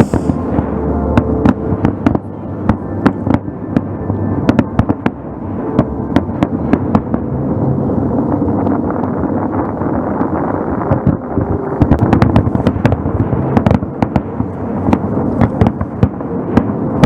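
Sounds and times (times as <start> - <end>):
fireworks bangs: 0.0 - 3.9, 9.4 - 17.0
steady low rumble: 0.0 - 17.0.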